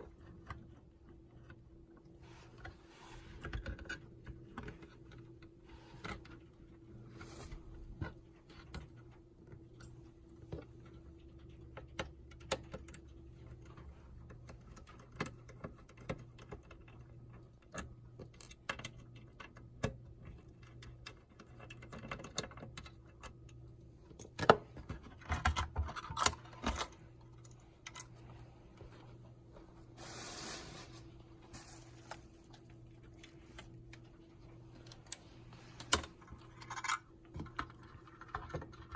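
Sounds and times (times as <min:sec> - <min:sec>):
faint steady hum: 0:00.0 - 0:38.9
hands clicking and tapping parts: 0:08.0 - 0:29.0.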